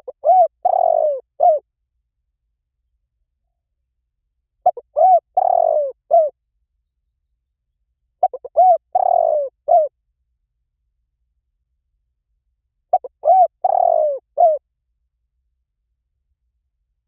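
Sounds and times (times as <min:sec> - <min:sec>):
dove cooing: 0:00.0 - 0:01.6, 0:04.6 - 0:06.3, 0:08.2 - 0:09.9, 0:12.9 - 0:14.6.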